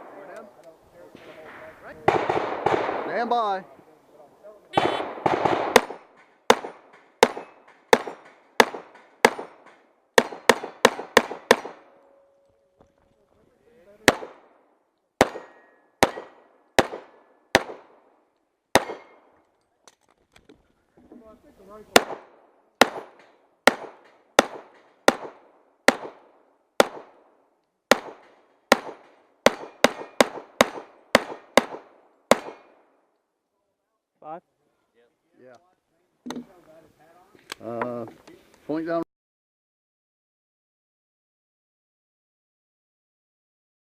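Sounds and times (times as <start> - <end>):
pistol shots with echo: 1.2 - 3.3, 4.8 - 12.0, 14.0 - 14.6, 15.2 - 18.0, 18.7 - 19.3, 21.9 - 32.9.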